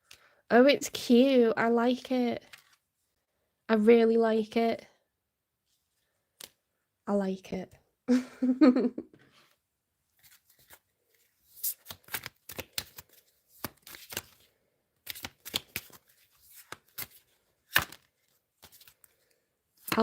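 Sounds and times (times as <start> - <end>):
cards being shuffled: 2.4 - 2.8, 10.2 - 20.0.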